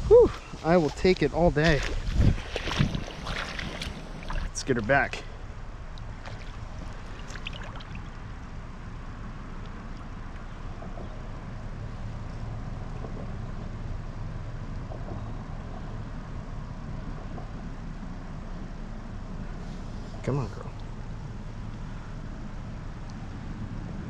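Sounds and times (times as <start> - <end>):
stream water flowing: 0.3 - 10.8
small water splashes: 1.0 - 4.8, 5.9 - 8.6.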